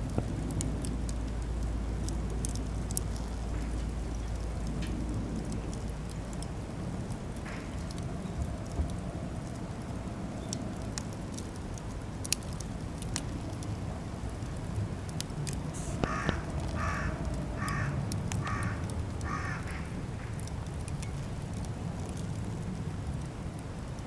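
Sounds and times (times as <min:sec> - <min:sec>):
campfire crackling and popping: 0:00.0 - 0:24.0
low rumble of fire: 0:00.0 - 0:24.0
crow cawing: 0:16.0 - 0:20.3.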